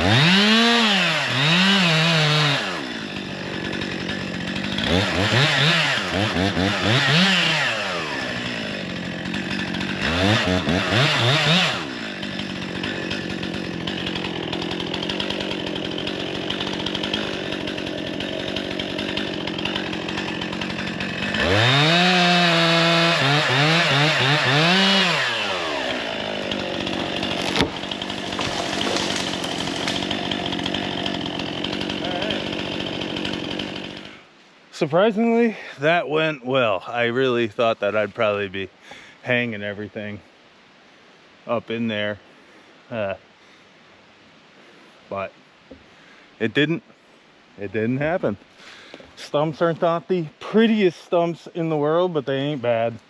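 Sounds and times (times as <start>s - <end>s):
chainsaw idling: 0.0s - 34.3s
chainsaw revving: 0.0s - 34.3s.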